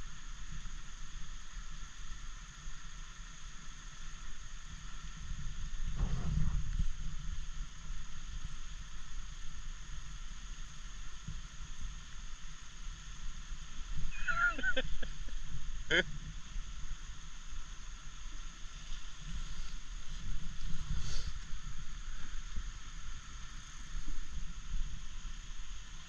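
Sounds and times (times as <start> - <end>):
river water rushing over shoals: 6.7 - 26.0.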